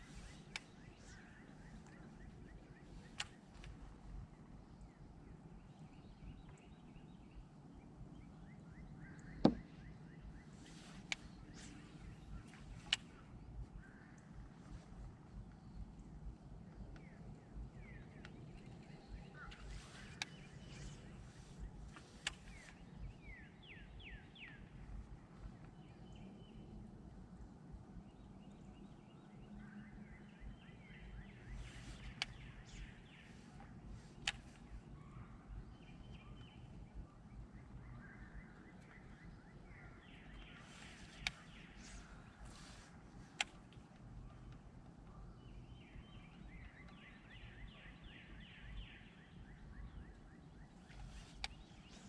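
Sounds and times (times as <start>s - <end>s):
bird chirping: 0.0s - 26.8s, 28.1s - 52.0s
sharp clicks: 3.0s - 3.8s, 21.9s - 22.8s, 31.7s - 32.9s, 33.5s - 34.7s, 41.0s - 42.6s, 43.3s - 44.6s
sharp click: 51.4s - 51.7s.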